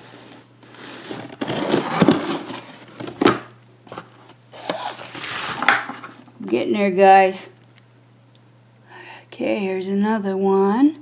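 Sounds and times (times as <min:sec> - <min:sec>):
packing paper rustling and crumpling: 0:00.0 - 0:06.2.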